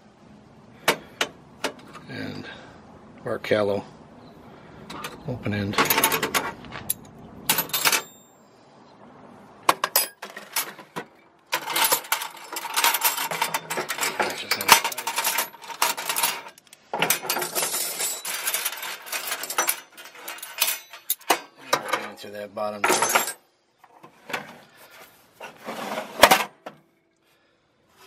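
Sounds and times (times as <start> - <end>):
steel wrenches clattering: 4.9 - 8.3, 9.7 - 23.4.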